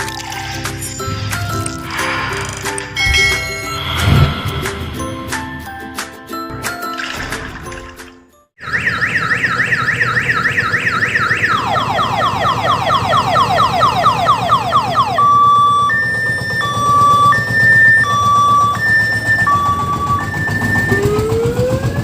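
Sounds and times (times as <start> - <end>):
electronic siren: 8.6 - 22.0.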